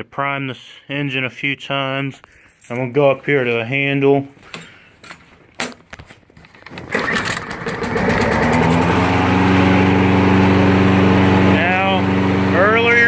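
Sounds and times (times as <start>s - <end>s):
lawn mower engine pull-started: 6.4s - 13.0s
lawn mower engine running: 6.6s - 13.0s.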